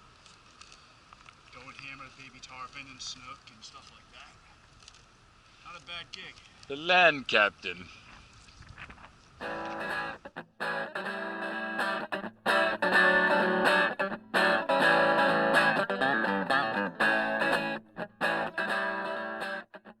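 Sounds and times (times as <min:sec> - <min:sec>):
distorted electric guitar: 0:09.4 - 0:20.0.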